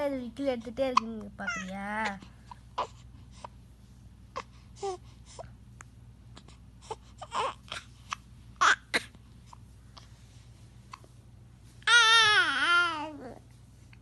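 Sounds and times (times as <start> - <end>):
baby whimpering cries: 11.9 - 13.4.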